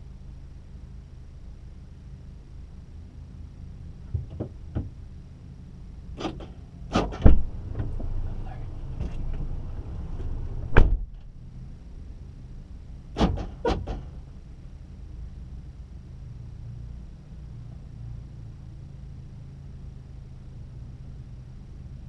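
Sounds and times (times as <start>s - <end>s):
low rumble: 0.8s - 13.2s
knocks and thumps: 4.1s - 5.0s, 6.2s - 8.2s.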